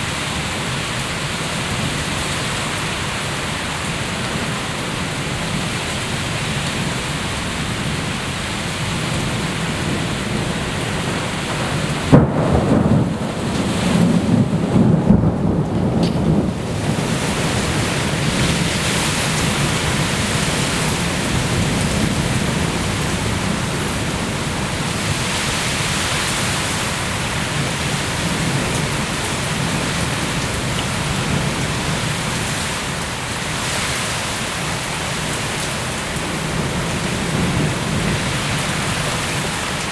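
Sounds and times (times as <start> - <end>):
steady rain falling: 0.0 - 39.9
low rumbling thunder: 8.8 - 25.2
sharp thunderclap: 9.8 - 20.0.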